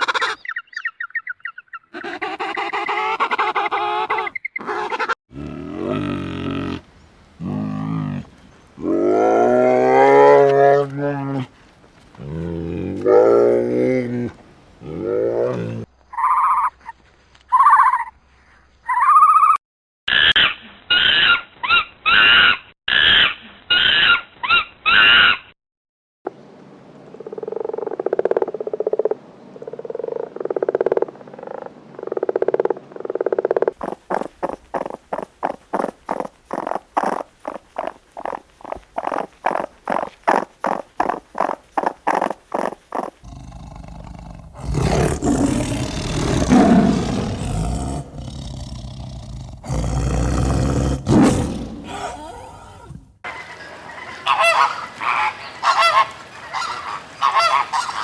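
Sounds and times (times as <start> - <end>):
animal calls: 0.0 - 0.6, 1.8 - 11.6, 33.8 - 58.0.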